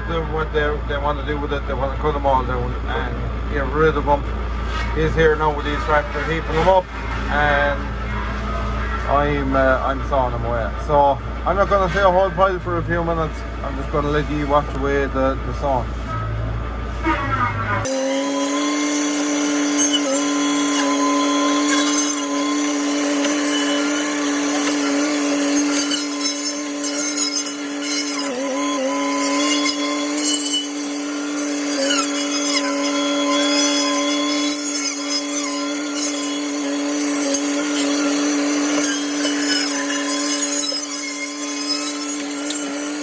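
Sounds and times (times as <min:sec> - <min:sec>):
hedgecutter saw blade spinning: 0:17.9 - 0:43.0.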